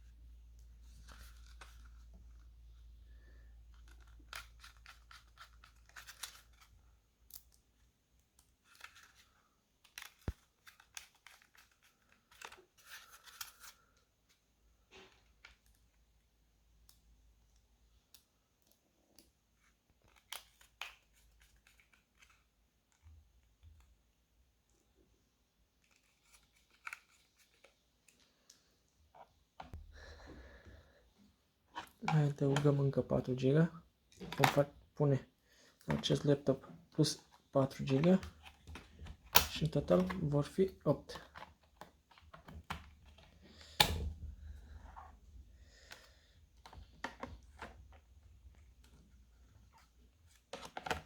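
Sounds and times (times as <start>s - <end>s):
laptop parts clicking and scraping: 3.7s - 7.6s, 8.2s - 14.0s, 19.5s - 23.1s, 25.8s - 29.3s.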